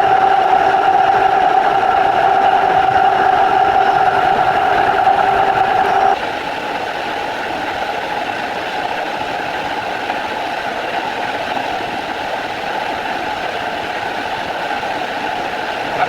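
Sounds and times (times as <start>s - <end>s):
high steady whine: 0.0s - 6.2s.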